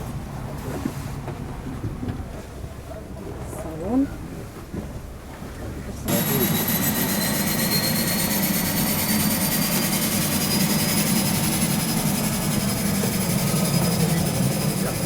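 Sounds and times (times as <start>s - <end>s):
turboprop engines droning: 6.1s - 15.0s.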